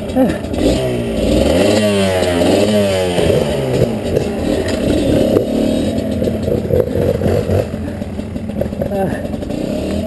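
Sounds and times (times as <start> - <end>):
dirt bike engine revving: 0.0 - 10.0.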